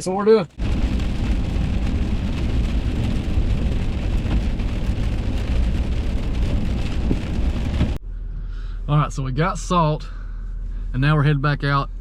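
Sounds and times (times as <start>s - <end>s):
heavy rain falling: 0.6s - 8.0s.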